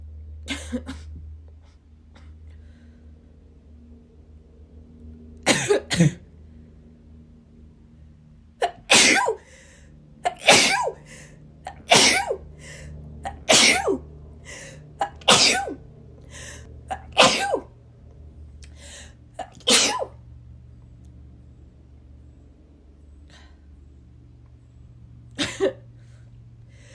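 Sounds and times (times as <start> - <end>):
person sneezing: 8.6 - 9.4, 10.3 - 11.0, 11.7 - 12.4, 13.3 - 14.0, 15.0 - 15.8, 17.0 - 17.7, 19.4 - 20.1.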